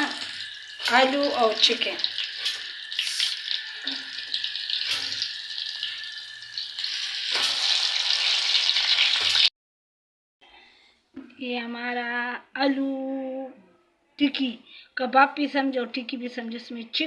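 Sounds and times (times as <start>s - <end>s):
food sizzling in hot oil: 0.0s - 9.5s.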